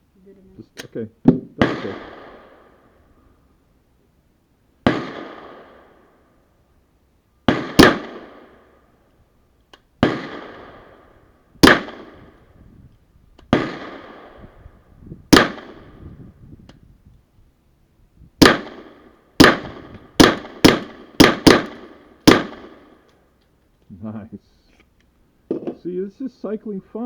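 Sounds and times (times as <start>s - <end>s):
suppressed pistol shots with echo: 1.2s - 3.0s, 4.8s - 6.2s, 7.5s - 8.8s, 10.0s - 12.6s, 13.4s - 16.2s, 18.4s - 23.1s.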